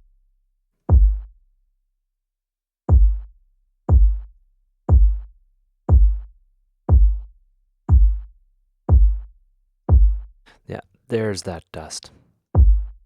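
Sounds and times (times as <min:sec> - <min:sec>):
distorted kick drum thuds: 0:00.9 - 0:01.4, 0:02.9 - 0:03.3, 0:03.9 - 0:04.3, 0:04.9 - 0:05.3, 0:05.9 - 0:06.3, 0:06.9 - 0:07.3, 0:07.9 - 0:09.3, 0:09.9 - 0:10.4, 0:12.6 - 0:13.0.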